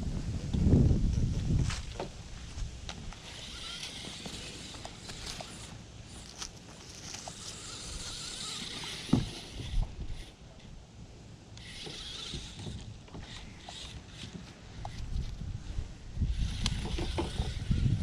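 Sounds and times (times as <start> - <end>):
toy car hissing: 3.2 - 10.4, 11.6 - 15.0, 16.3 - 18.0.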